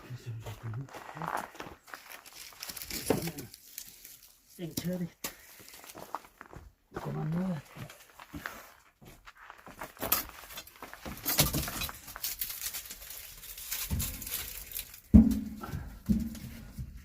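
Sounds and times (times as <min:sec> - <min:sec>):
logs knocking and clattering: 0:10.1 - 0:12.4, 0:13.5 - 0:17.0.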